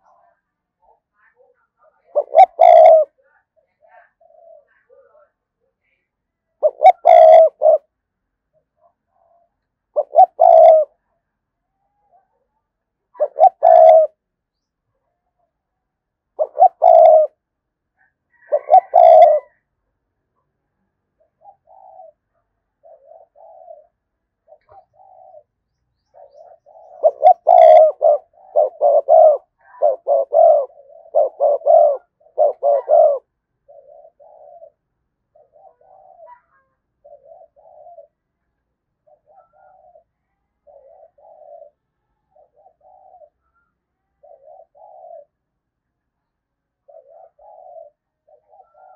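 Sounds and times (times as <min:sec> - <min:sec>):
dove cooing: 0:00.0 - 0:05.3, 0:06.6 - 0:07.9, 0:08.6 - 0:11.0, 0:11.9 - 0:12.4, 0:13.2 - 0:14.2, 0:16.3 - 0:17.4, 0:18.0 - 0:19.6, 0:21.2 - 0:38.3, 0:39.0 - 0:45.5, 0:46.8 - 0:48.9.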